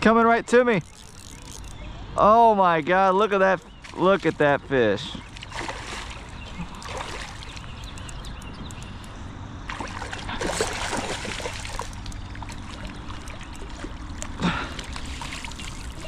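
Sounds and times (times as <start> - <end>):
river water running: 0.0 - 16.0
water splashing: 3.6 - 7.8, 9.7 - 16.0.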